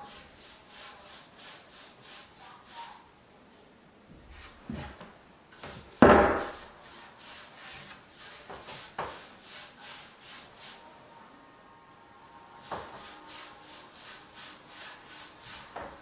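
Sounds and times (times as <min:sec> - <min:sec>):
rubbing on wooden table: 0:00.0 - 0:03.1, 0:04.3 - 0:10.8, 0:12.6 - 0:16.0
knock on wood: 0:06.0 - 0:06.6.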